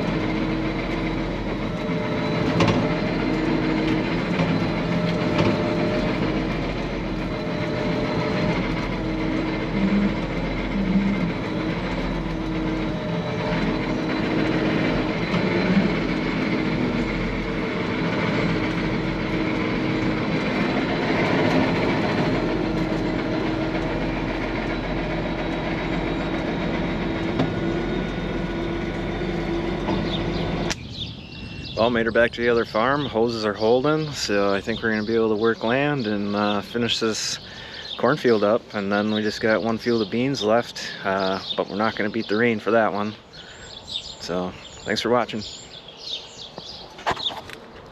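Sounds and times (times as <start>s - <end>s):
tractor diesel engine running: 0.0s - 47.9s.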